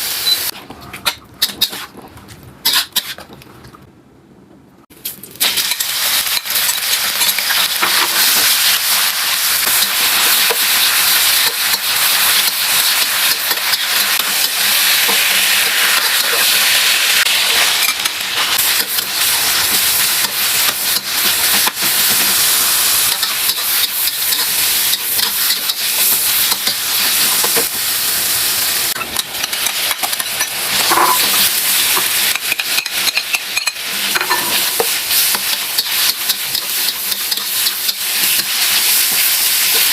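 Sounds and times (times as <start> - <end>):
food sizzling in a pan: 5.1 - 39.9.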